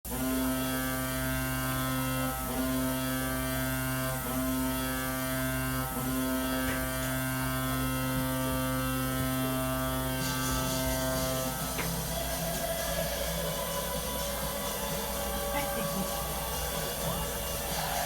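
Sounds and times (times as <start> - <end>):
arena goal horn blast: 0.1 - 12.6.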